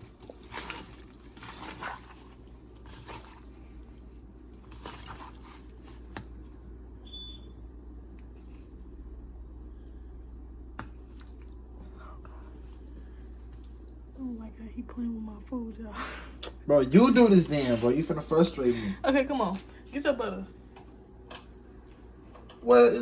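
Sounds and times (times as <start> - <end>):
hands squishing raw shrimp: 0.0 - 9.2
low room hum: 0.0 - 23.0.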